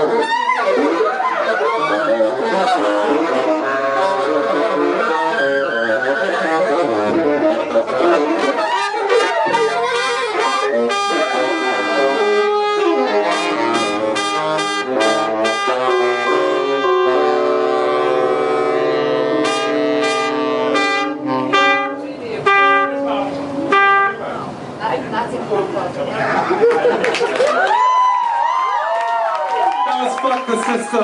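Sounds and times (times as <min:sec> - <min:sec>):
saxophone and brass ensemble: 0:00.0 - 0:24.6.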